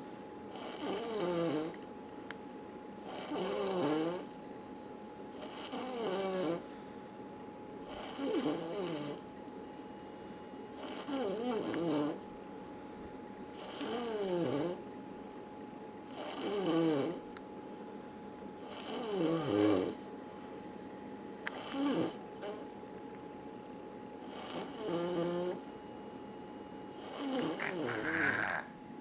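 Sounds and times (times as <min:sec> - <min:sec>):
person snoring: 0:00.5 - 0:01.8, 0:03.1 - 0:04.4, 0:05.4 - 0:06.7, 0:07.9 - 0:09.2, 0:10.8 - 0:12.2, 0:13.6 - 0:14.9, 0:16.1 - 0:17.3, 0:18.6 - 0:20.0, 0:21.5 - 0:22.7, 0:24.2 - 0:25.6, 0:27.0 - 0:28.8.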